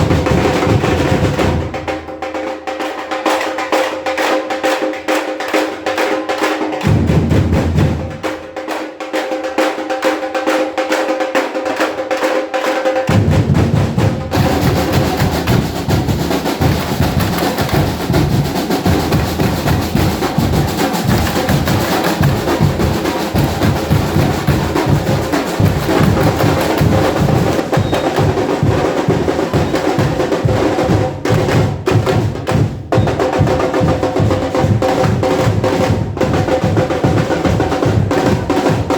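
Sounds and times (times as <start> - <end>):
snare and high drums beat: 0.0 - 38.9
bass drums: 13.1 - 38.8.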